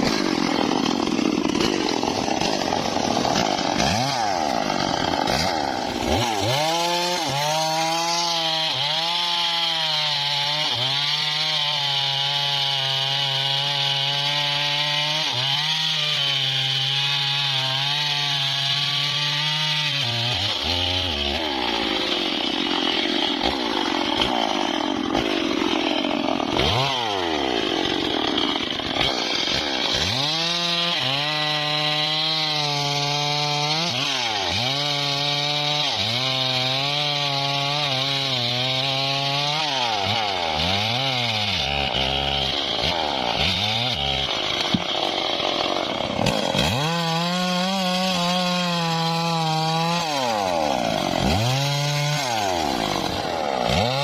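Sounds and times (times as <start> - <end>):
bandsaw motor: 0.0 - 54.0.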